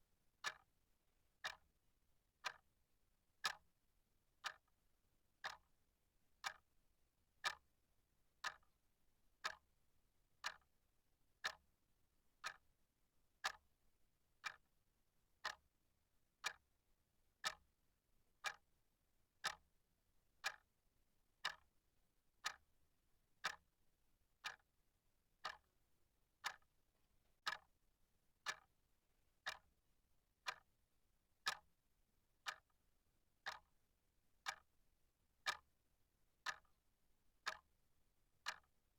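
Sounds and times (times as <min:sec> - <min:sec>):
clock ticking: 0:01.4 - 0:01.6, 0:05.4 - 0:05.6, 0:08.4 - 0:08.6, 0:09.4 - 0:09.6, 0:11.4 - 0:11.6, 0:14.4 - 0:14.6, 0:15.4 - 0:15.6, 0:17.4 - 0:17.6, 0:19.4 - 0:19.6, 0:21.4 - 0:21.6, 0:22.4 - 0:22.6, 0:23.4 - 0:23.6, 0:24.4 - 0:24.6, 0:25.4 - 0:25.7, 0:26.4 - 0:26.6, 0:27.4 - 0:27.7, 0:28.4 - 0:28.7, 0:29.4 - 0:29.7, 0:30.4 - 0:30.7, 0:31.4 - 0:31.7, 0:32.4 - 0:32.8, 0:33.4 - 0:33.7, 0:34.4 - 0:34.7, 0:35.4 - 0:35.7, 0:36.4 - 0:36.7, 0:37.4 - 0:37.6, 0:38.4 - 0:38.7.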